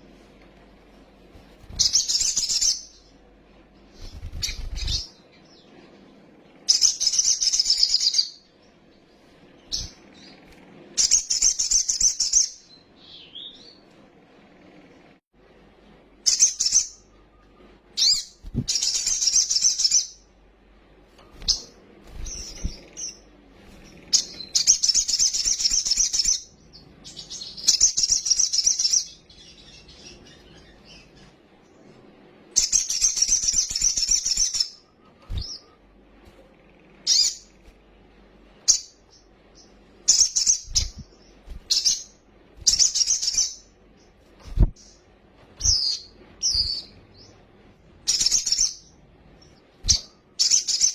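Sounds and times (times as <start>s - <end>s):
bird chirps: 1.7s - 3.1s, 3.9s - 5.8s, 6.7s - 8.5s, 16.2s - 20.3s, 21.2s - 31.3s, 32.6s - 37.6s, 38.6s - 45.0s, 45.6s - 49.0s, 49.8s - 50.9s.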